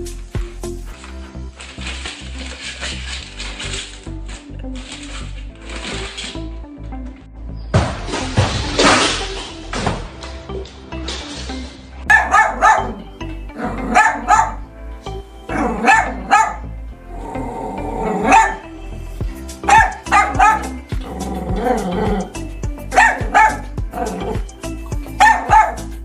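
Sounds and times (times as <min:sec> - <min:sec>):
background music: 0:00.0 - 0:26.0
dog barking: 0:12.1 - 0:13.0, 0:13.6 - 0:14.6, 0:15.5 - 0:16.7, 0:18.1 - 0:18.7, 0:19.6 - 0:22.2, 0:22.9 - 0:24.4, 0:25.2 - 0:25.9.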